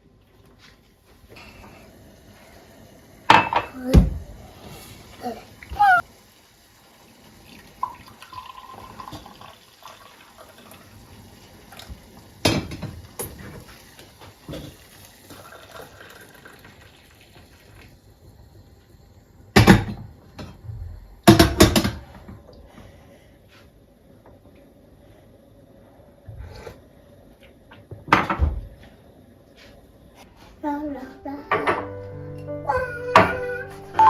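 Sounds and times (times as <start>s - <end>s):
water running at a sink: 1.2s - 22.4s
dishes clattering: 3.3s - 3.8s, 31.5s - 32.0s.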